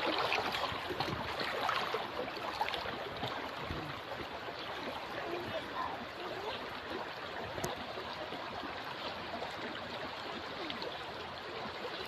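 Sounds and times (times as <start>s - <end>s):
stream water flowing: 0.0s - 12.0s.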